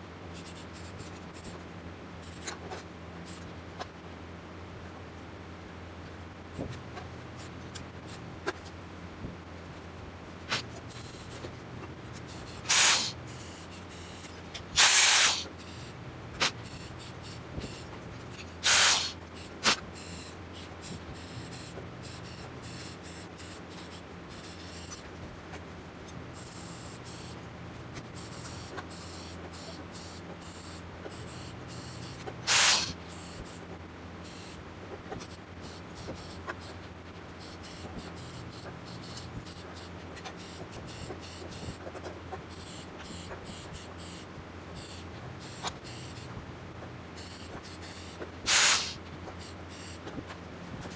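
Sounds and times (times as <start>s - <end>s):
steady low hum: 0.0s - 50.9s
welding arc hissing: 12.4s - 17.8s, 18.6s - 20.3s, 31.8s - 33.0s, 47.2s - 50.0s.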